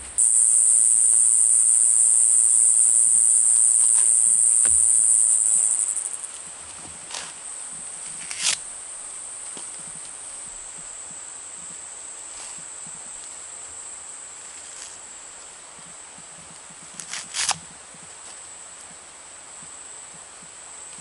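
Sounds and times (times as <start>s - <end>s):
high-pitched insect drone: 0.0s - 11.8s.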